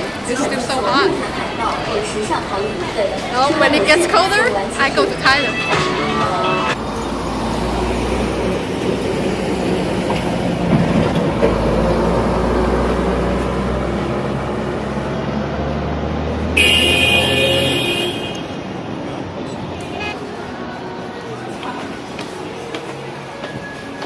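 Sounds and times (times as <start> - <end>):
rumble of passing vehicles: 0.0 - 24.0.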